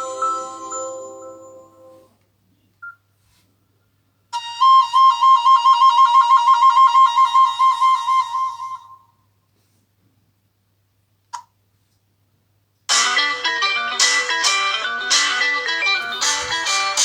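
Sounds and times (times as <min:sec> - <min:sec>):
flute-like warbling ringtone: 0:00.0 - 0:02.0, 0:16.0 - 0:17.0.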